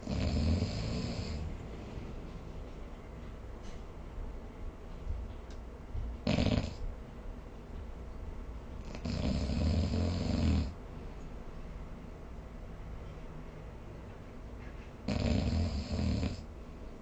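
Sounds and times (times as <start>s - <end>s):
person snoring: 0.0s - 1.6s, 8.8s - 10.8s, 15.1s - 16.4s.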